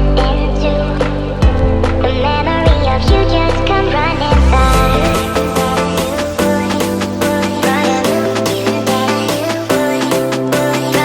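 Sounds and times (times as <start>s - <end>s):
background music with bass and melody: 0.0s - 11.0s
drum hits: 2.7s - 8.2s.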